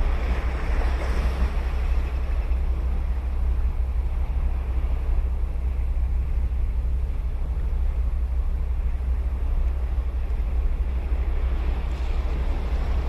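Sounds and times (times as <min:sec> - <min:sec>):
ocean surf on sandy beach: 0:00.0 - 0:05.9, 0:09.8 - 0:13.0
deep rumble: 0:00.0 - 0:13.0.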